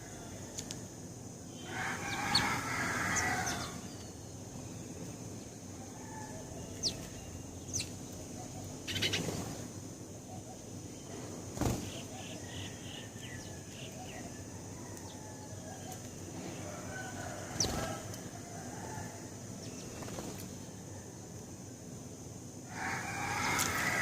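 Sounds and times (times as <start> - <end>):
sparrows chirping: 1.4 - 18.1, 19.5 - 20.7.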